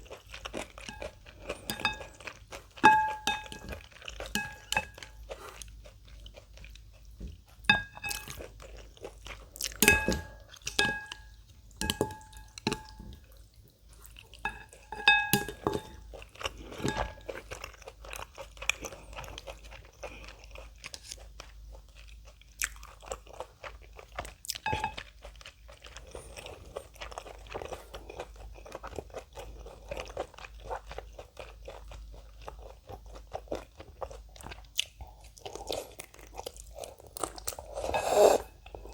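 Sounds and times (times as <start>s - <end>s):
utensils knocking bowl: 9.8s - 11.2s, 14.5s - 16.0s.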